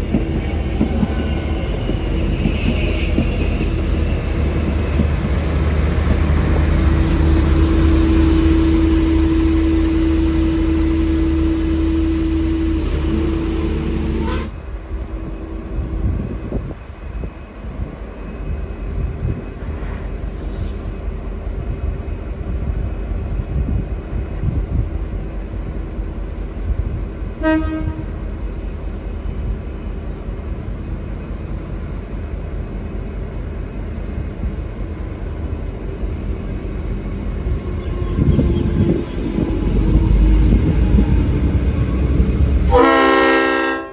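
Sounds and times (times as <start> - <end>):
diesel locomotive rumbling: 0.0 - 43.9
train horn toot: 6.9 - 16.7, 27.4 - 28.2, 42.7 - 43.9.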